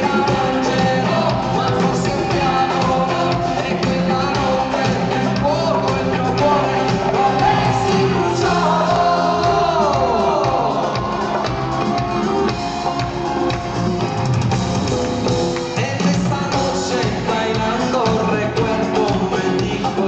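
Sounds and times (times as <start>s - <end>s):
person singing: 0.0s - 13.2s, 15.1s - 20.0s
live band playing pop song: 0.0s - 20.0s.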